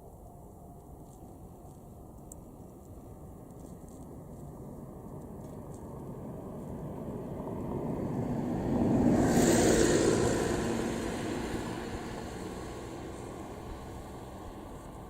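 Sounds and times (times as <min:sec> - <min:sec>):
vehicle passing by: 0:06.0 - 0:15.0.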